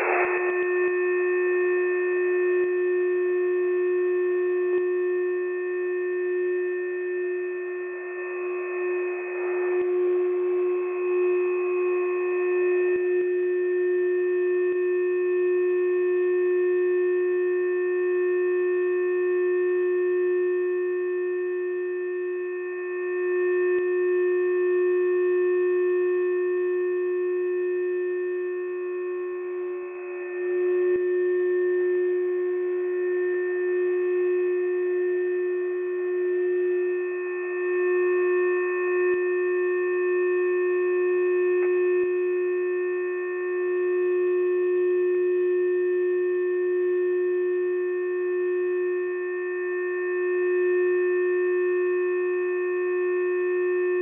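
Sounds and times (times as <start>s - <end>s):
radio droning tone: 0.0s - 2.1s, 6.3s - 13.3s, 28.7s - 32.4s.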